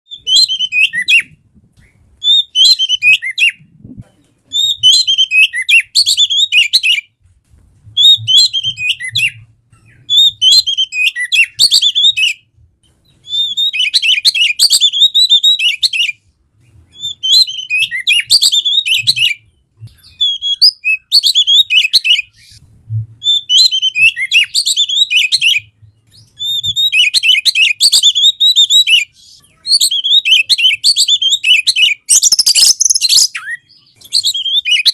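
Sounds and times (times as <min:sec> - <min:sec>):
magpie-robin singing: 0:00.1 - 0:03.6, 0:04.5 - 0:07.1, 0:08.0 - 0:12.4, 0:13.1 - 0:16.2, 0:16.9 - 0:22.6, 0:23.2 - 0:34.9.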